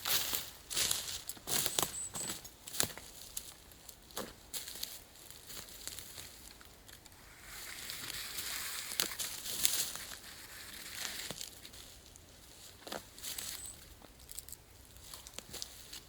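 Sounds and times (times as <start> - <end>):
crinkly rustling: 4.5 - 16.0.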